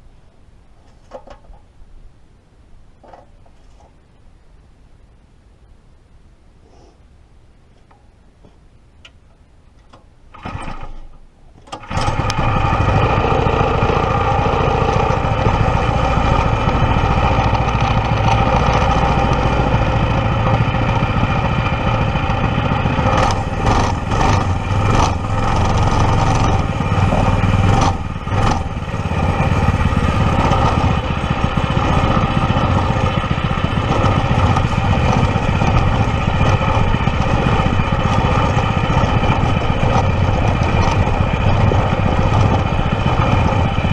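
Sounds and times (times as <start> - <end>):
small engine starting and running: 10.3 - 43.9.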